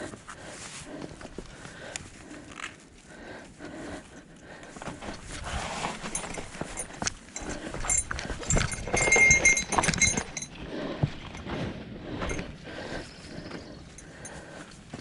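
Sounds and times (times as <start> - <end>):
mountain bike rattling: 5.7 - 12.4.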